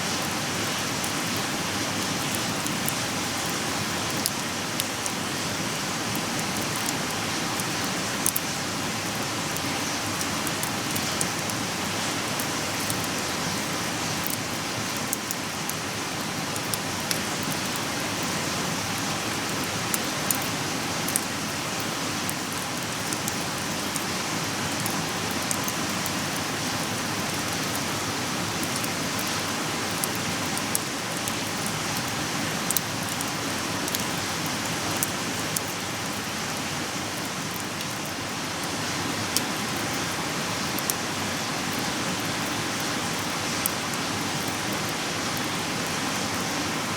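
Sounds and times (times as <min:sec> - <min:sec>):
campfire crackling and popping: 0:00.2 - 0:36.4.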